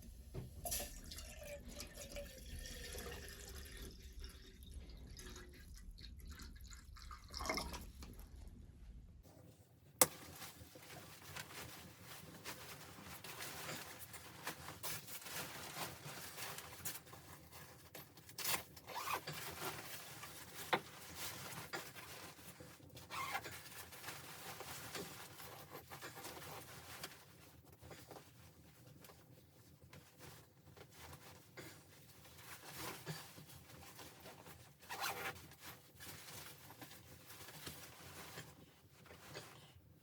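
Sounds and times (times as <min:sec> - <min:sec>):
rustling and scraping: 0:09.2 - 0:39.9.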